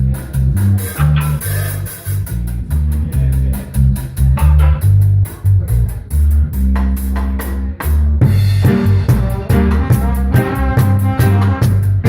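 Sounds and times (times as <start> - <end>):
bass guitar line: 0.0 - 12.0
guitar: 7.6 - 12.0.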